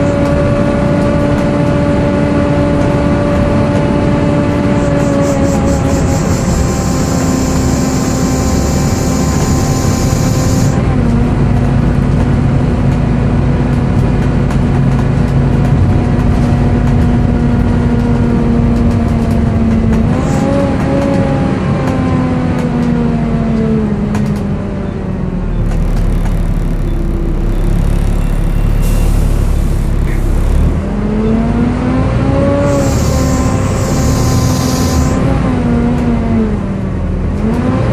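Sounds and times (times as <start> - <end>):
bus engine running: 0.0 - 37.9
screechy cooling fan whine: 4.5 - 10.8, 32.6 - 35.4.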